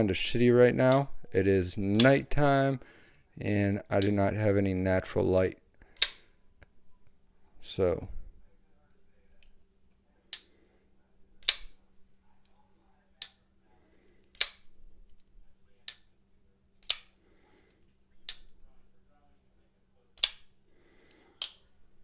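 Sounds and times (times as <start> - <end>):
knife blade snapping open: 20.2 - 20.5.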